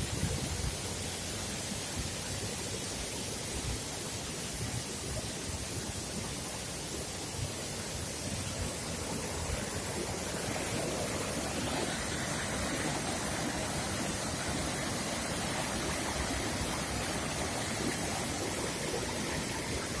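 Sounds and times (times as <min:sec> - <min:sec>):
wind on microphone: 0:00.0 - 0:01.1
waterfall rushing: 0:00.0 - 0:20.0.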